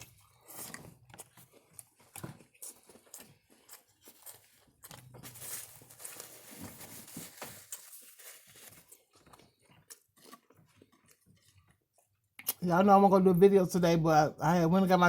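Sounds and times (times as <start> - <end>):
crunching and chewing chips: 0.0 - 12.6
food packaging crinkling: 0.3 - 11.9.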